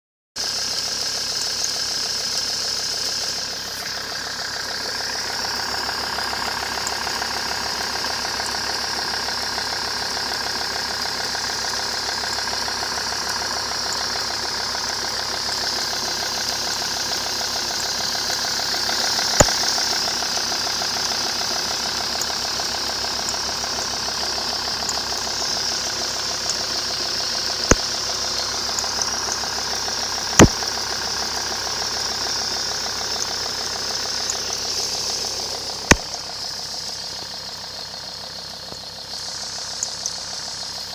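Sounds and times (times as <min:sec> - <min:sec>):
diesel engine idling with rattling: 0:00.4 - 0:40.9
sharp clicks: 0:19.1 - 0:20.0, 0:27.6 - 0:29.4, 0:30.4 - 0:30.7, 0:34.2 - 0:36.4.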